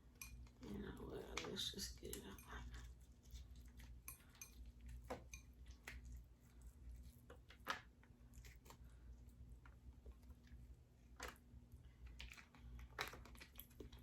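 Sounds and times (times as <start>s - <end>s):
crab shells clicking and crackling: 11.1s - 14.0s.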